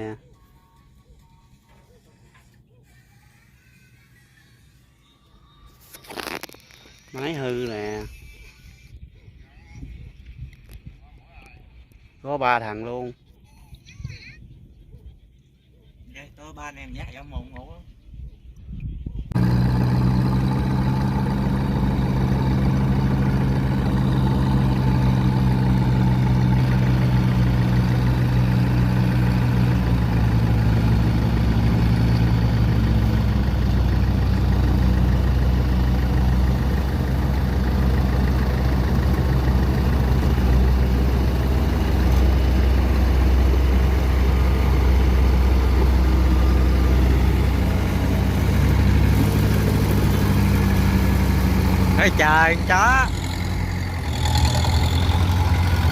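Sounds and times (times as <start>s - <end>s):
diesel engine droning: 19.3s - 55.9s.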